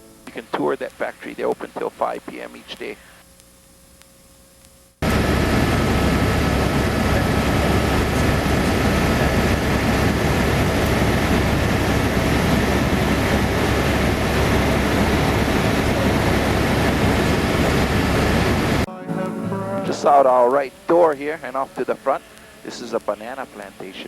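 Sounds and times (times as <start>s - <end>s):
faint steady tones: 0.0s - 5.0s, 5.8s - 24.0s
helicopter cabin drone: 5.0s - 24.0s.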